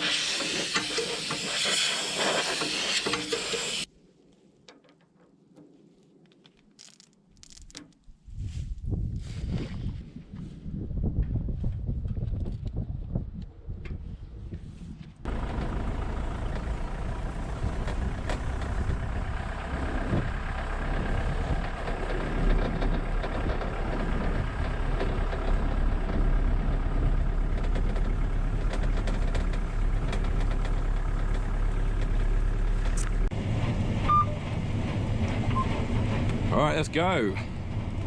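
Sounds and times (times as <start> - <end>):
combine harvester drone: 15.3 - 38.0
low hum: 15.3 - 38.0.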